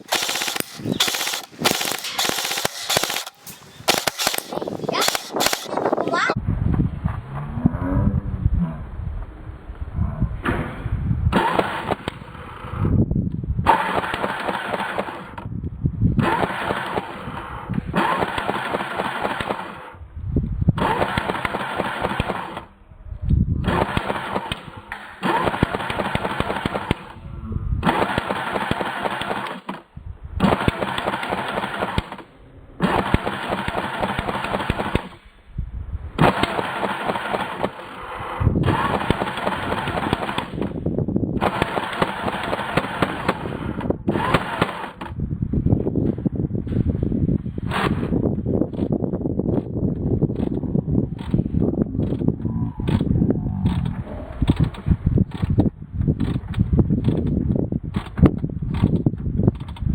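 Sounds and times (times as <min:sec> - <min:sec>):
airsoft gun firing bursts: 0:00.0 - 0:06.4, 0:11.3 - 0:12.5, 0:13.7 - 0:15.4, 0:16.2 - 0:20.0, 0:20.8 - 0:22.8, 0:23.6 - 0:27.2, 0:27.8 - 0:35.3, 0:36.2 - 0:45.2.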